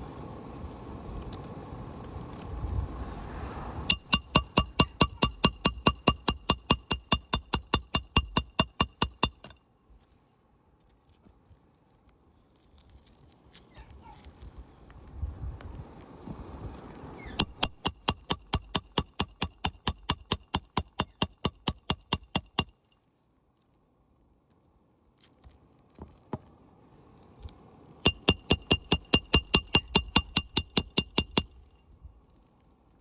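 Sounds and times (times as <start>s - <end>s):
hammer driving nails: 3.9s - 9.6s, 17.4s - 22.7s, 28.1s - 31.6s.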